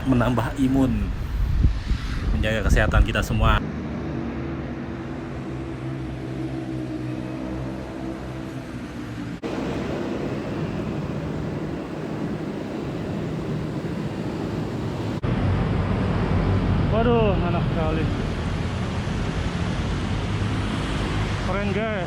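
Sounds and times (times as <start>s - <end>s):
city road traffic: 0.0s - 22.0s
low engine hum: 3.6s - 21.2s.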